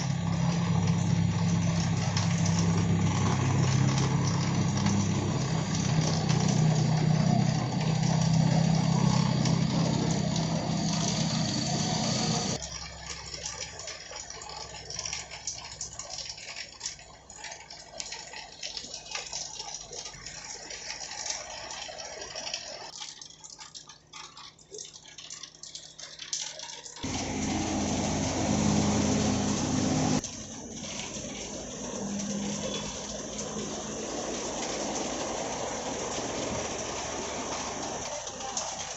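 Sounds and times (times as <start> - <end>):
heavy rain falling: 0.0 - 12.6, 27.0 - 38.9
vehicle engine running: 0.0 - 12.6, 27.0 - 38.9.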